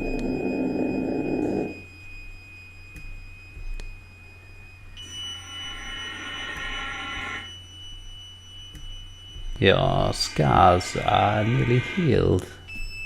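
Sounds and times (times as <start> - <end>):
high pure electronic tones: 0.0 - 13.0
low hum: 0.0 - 13.0
bright cluster of tones: 5.0 - 7.7, 9.6 - 12.7.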